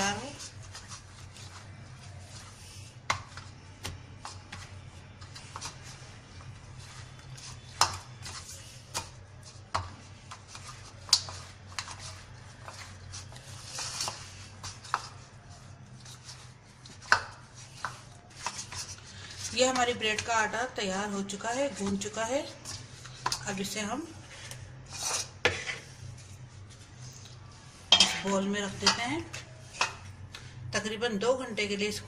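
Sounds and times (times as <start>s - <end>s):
dough slapping and knocking: 16.8s - 18.9s.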